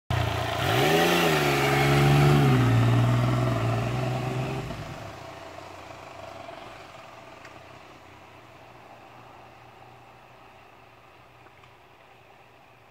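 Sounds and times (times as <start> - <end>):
motorcycle engine revving: 0.1 - 5.5.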